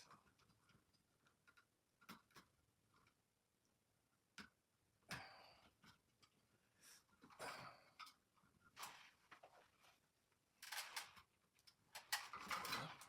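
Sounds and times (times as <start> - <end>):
electrical wires clicking and rustling: 7.2 - 13.0.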